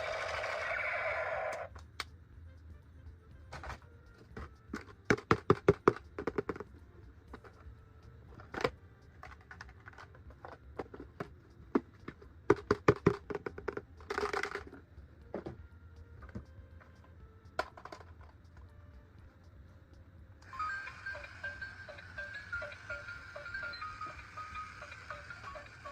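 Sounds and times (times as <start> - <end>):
plastic toy parts clicking: 8.4 - 14.8.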